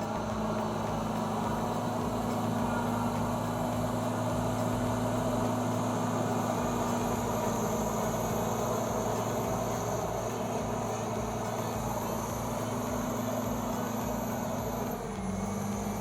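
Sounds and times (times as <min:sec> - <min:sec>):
bulldozer diesel engine running: 0:00.0 - 0:16.0.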